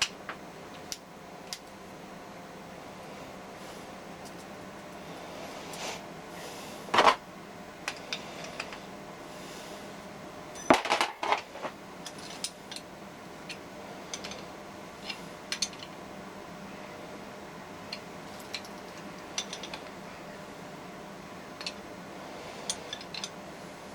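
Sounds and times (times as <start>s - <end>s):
metal pieces clinking and knocking: 10.6s - 12.9s, 17.9s - 19.9s.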